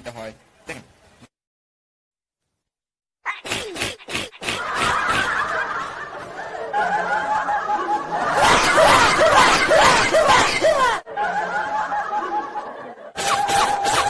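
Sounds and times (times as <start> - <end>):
laughter in rapid bursts: 3.4 - 14.0.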